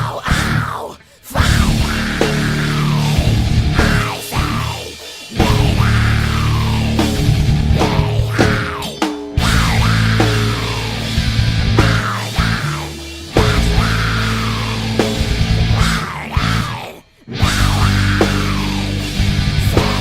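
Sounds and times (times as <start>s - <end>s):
heavy rock music: 0.0s - 20.0s.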